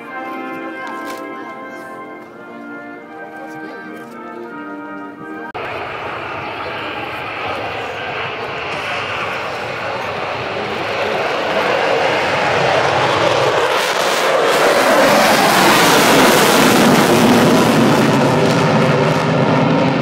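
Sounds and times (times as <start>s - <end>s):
fighter jet flying past: 5.6s - 20.0s.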